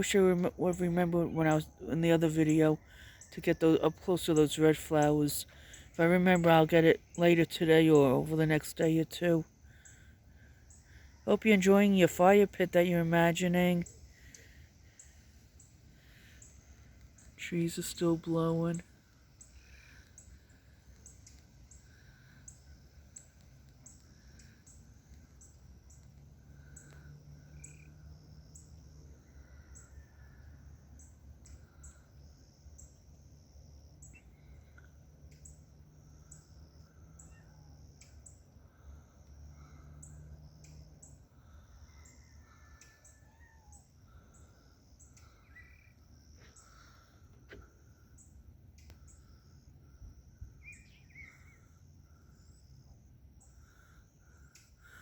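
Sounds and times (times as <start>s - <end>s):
birds chirping: 0.0s - 28.8s, 50.4s - 55.0s.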